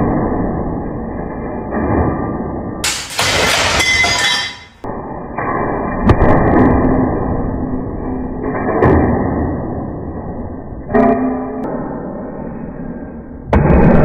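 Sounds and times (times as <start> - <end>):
heavy crusher impacts: 2.8 - 4.8.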